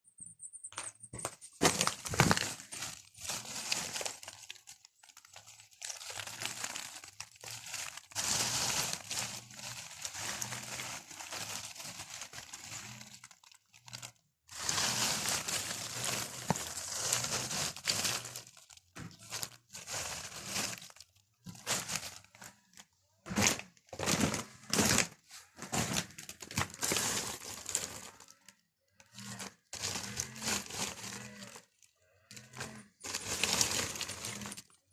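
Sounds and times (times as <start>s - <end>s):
dry bark crackling and rustling: 1.7s - 22.6s, 25.4s - 28.5s, 29.1s - 34.7s.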